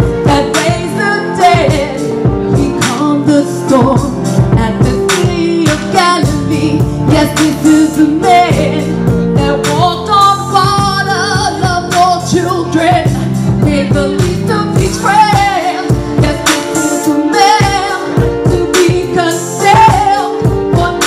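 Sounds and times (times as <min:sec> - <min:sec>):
band accompaniment: 0:00.0 - 0:21.0
woman singing: 0:00.0 - 0:21.0.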